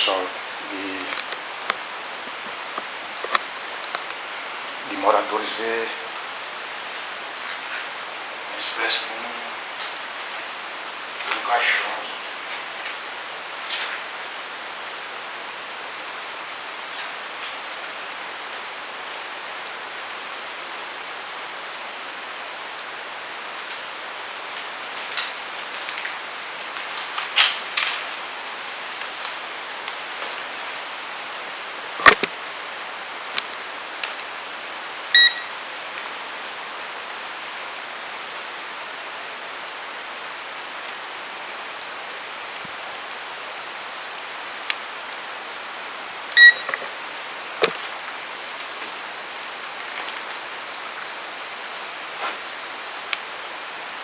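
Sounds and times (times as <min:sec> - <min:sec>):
steady hiss: 0:00.0 - 0:54.0
short electronic beeps: 0:35.2 - 0:35.5, 0:46.4 - 0:46.7.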